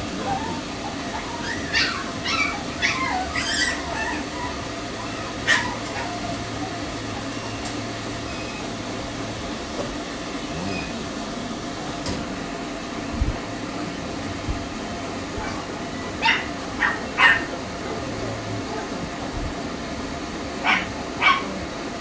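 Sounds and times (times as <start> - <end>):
pet dryer blowing: 0.0 - 22.0
puppy yipping: 0.2 - 7.6, 16.2 - 17.5, 20.6 - 21.5.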